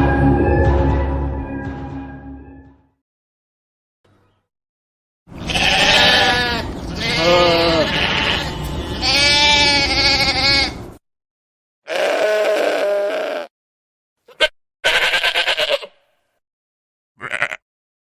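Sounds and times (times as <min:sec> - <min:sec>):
sheep bleating: 0:05.3 - 0:10.8, 0:11.9 - 0:13.5, 0:14.2 - 0:16.1, 0:17.2 - 0:17.6.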